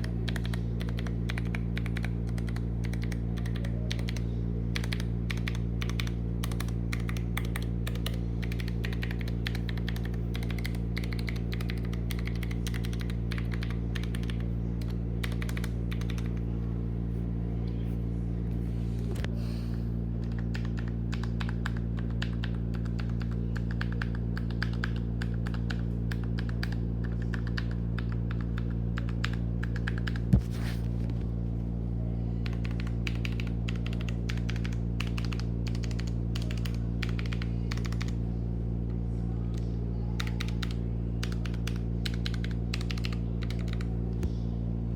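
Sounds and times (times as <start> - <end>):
mechanical keyboard typing: 0.0 - 16.4, 20.2 - 30.3, 32.4 - 38.2, 40.2 - 43.9
steady low hum: 0.0 - 44.9.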